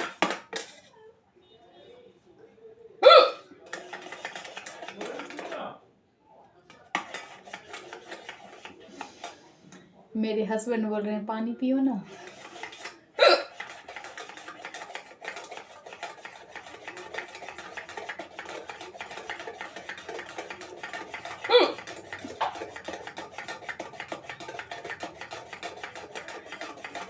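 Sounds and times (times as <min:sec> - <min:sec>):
woman hiccuping: 0:03.0 - 0:03.4, 0:13.2 - 0:13.5.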